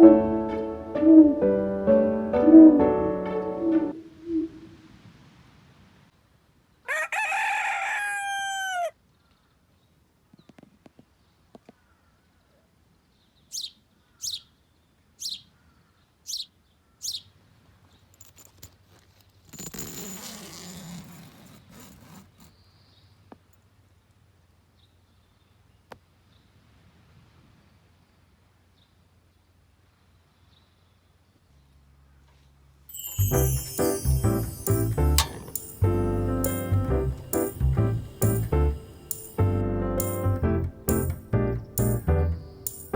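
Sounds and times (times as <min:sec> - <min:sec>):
rooster crowing: 0:06.9 - 0:09.0
high-pitched bird calls: 0:13.5 - 0:14.5, 0:15.2 - 0:15.5, 0:16.3 - 0:17.3.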